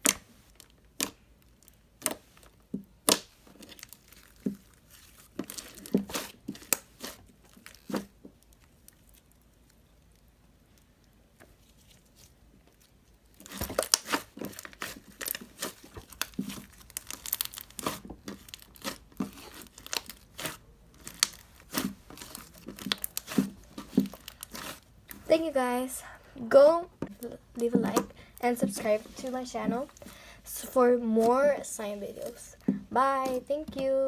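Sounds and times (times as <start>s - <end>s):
slime popping and crackling: 0.0s - 11.1s, 12.6s - 25.4s.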